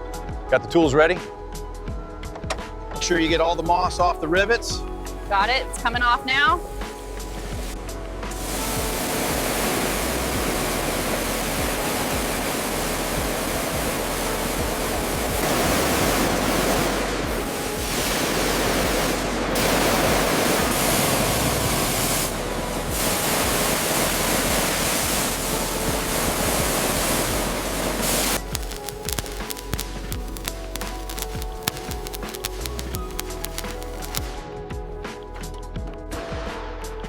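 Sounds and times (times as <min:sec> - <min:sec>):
high-pressure water spray hissing: 0:05.0 - 0:34.4.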